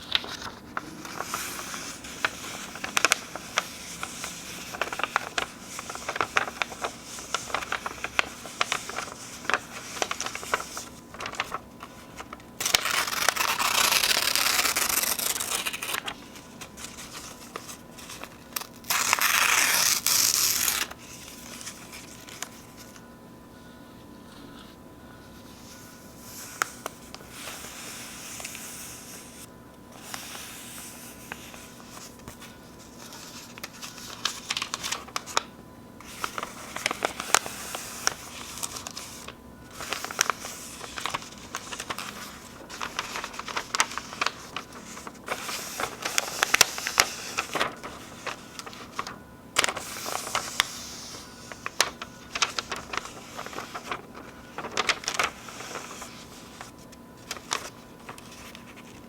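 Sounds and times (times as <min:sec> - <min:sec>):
paper tearing and crinkling: 0:00.0 - 0:22.6, 0:33.2 - 0:35.4, 0:36.0 - 0:59.0.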